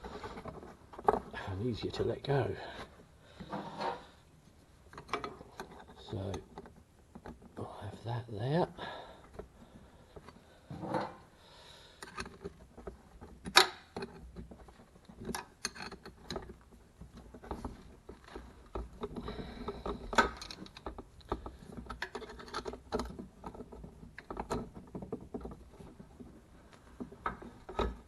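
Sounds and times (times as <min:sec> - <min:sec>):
hand tools clicking and knocking: 0:04.9 - 0:07.6, 0:11.9 - 0:28.0.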